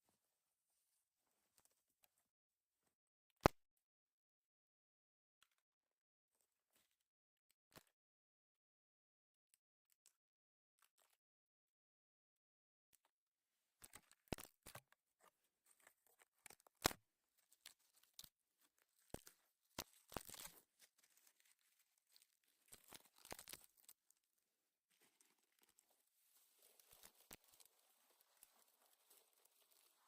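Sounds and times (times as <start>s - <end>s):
twigs snapping: 19.0s - 24.0s, 26.6s - 30.0s
bark rustling and tearing: 19.2s - 23.9s.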